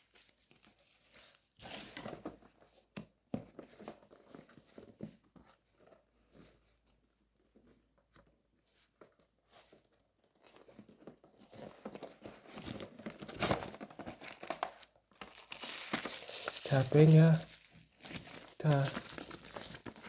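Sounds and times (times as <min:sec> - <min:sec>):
packaging crinkling and rustling: 0:08.9 - 0:20.0.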